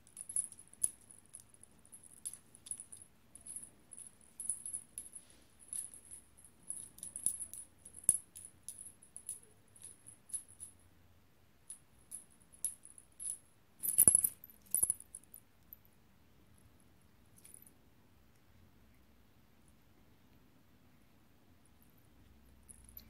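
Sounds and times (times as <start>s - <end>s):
small bell jingling: 0.0s - 10.8s, 11.7s - 15.4s.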